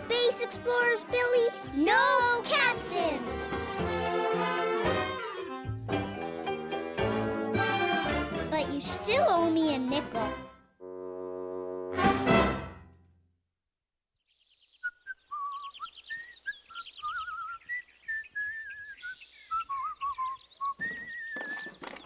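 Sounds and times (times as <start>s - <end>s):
brass music sting: 10.8s - 13.0s
birds chirping and warbling: 14.2s - 22.0s.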